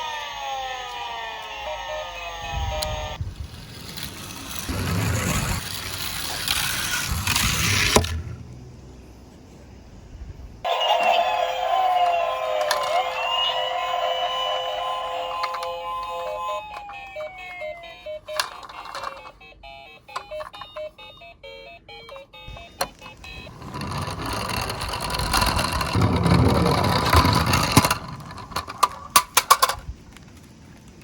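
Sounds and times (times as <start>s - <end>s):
toy siren glides: 0.0s - 3.2s, 10.7s - 29.1s
rolling rush: 2.6s - 16.4s, 22.8s - 30.5s
toy beeping tones: 10.7s - 27.7s
plastic clicks and clatters: 18.3s - 19.4s, 26.8s - 31.0s.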